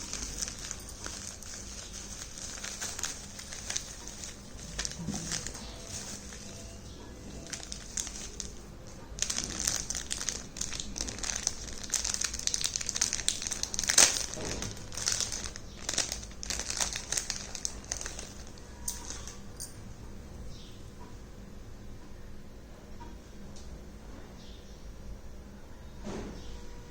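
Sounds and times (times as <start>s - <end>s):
packaging crinkling: 0.0s - 19.7s.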